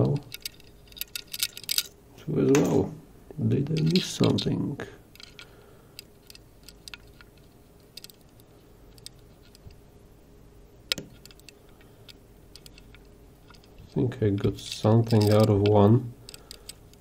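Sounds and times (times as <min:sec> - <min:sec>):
lock pick metallic ticks: 0:00.0 - 0:02.0, 0:05.1 - 0:09.8, 0:10.9 - 0:13.8, 0:14.6 - 0:17.0.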